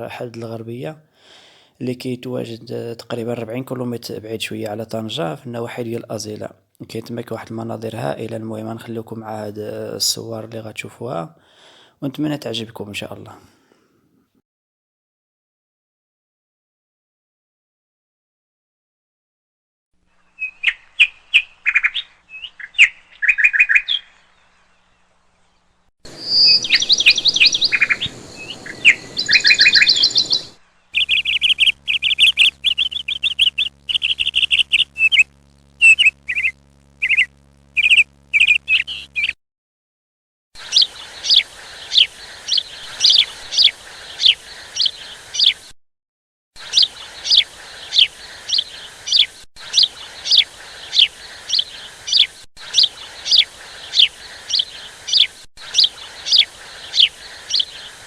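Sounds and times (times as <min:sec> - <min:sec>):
bird high falling chirp: 0:20.4 - 0:24.5, 0:26.1 - 0:39.4, 0:40.6 - 0:45.6, 0:46.6 - 0:58.0
songbirds chirping and singing: 0:20.4 - 0:39.4, 0:40.6 - 0:45.6, 0:46.6 - 0:58.0.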